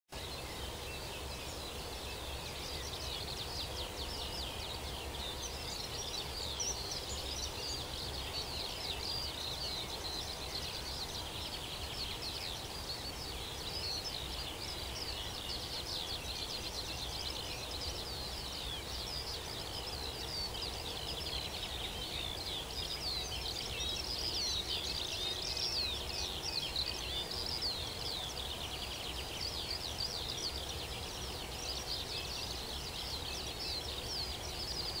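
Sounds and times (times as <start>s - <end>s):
songbirds chirping and trilling: 0.1s - 35.0s.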